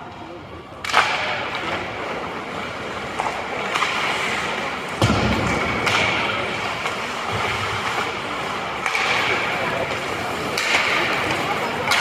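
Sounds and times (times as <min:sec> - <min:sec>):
stick hitting puck: 0:00.8 - 0:12.0
skates hissing on ice: 0:02.2 - 0:05.0, 0:06.1 - 0:11.8.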